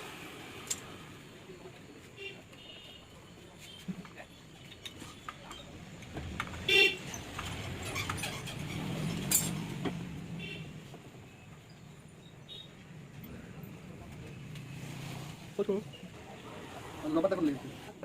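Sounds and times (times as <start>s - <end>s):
motor vehicle passing: 13.2s - 17.9s.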